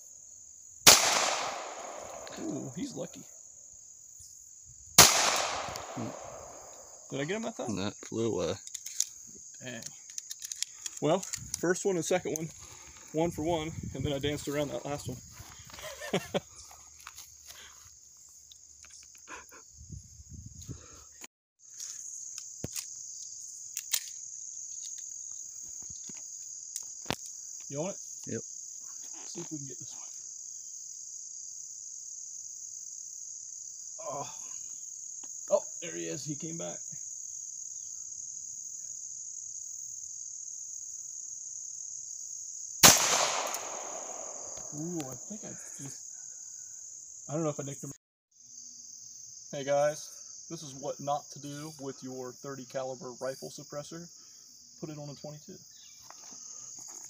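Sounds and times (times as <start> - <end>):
crickets chirring: 0.0 - 57.0
insect trill: 0.0 - 57.0
pistol shot with echo: 0.9 - 2.3, 5.0 - 6.8, 42.8 - 44.7.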